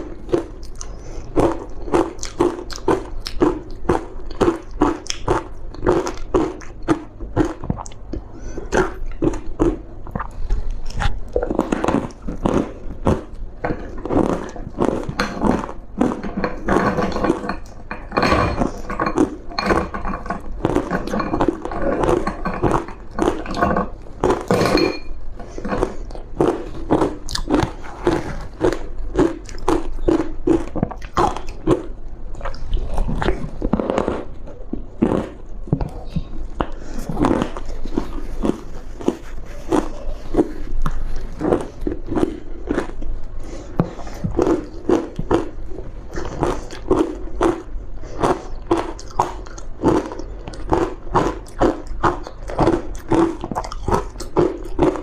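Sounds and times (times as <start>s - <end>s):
crunchy ice chewing: 0.0s - 55.0s.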